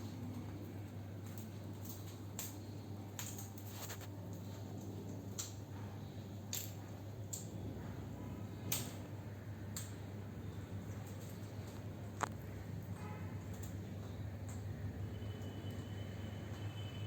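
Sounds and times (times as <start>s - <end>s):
light sharp clicks and taps: 0.3s - 7.6s, 8.7s - 9.1s, 9.7s - 10.1s, 10.8s - 14.7s.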